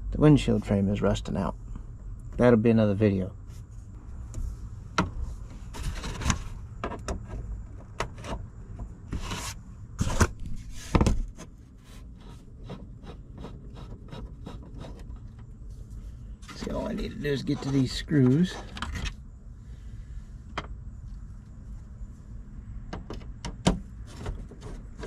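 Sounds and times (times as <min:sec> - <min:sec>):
plastic trim rubbing and clicking: 0:05.6 - 0:11.5, 0:12.2 - 0:15.5.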